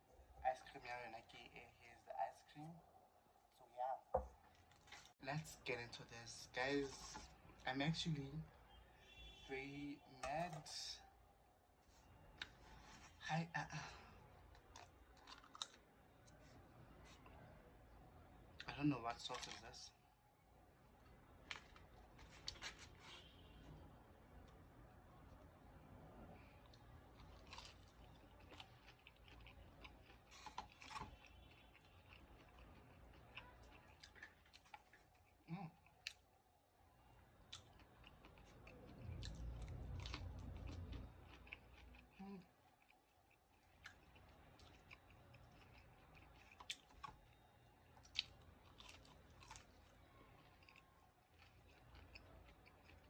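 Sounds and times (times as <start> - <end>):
chewing: 4.2 - 5.2, 6.4 - 7.7, 13.8 - 17.4, 21.0 - 23.4, 26.4 - 36.3, 37.1 - 53.0.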